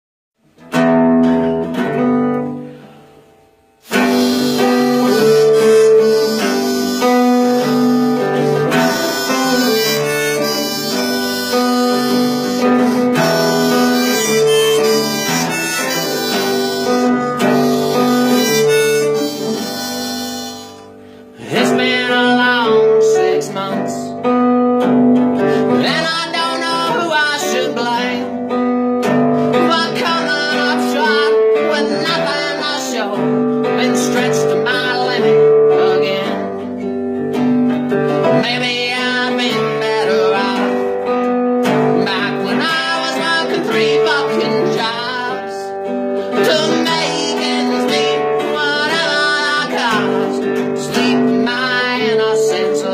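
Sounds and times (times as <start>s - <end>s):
acoustic guitar song: 0.4s - 52.9s.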